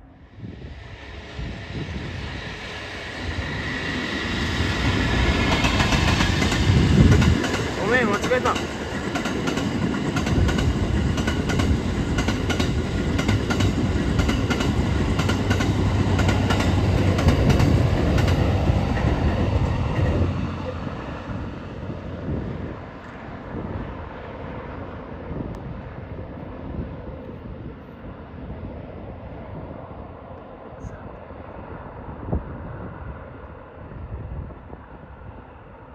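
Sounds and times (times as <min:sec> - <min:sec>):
train low rumble: 0:00.0 - 0:35.9
train wheels clicking over rail joints: 0:04.8 - 0:20.0.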